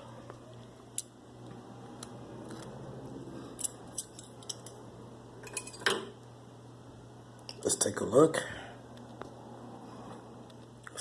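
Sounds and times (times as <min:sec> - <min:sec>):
faint steady hum: 0:00.0 - 0:11.0
metal utensils clinking on cookware: 0:05.4 - 0:06.1.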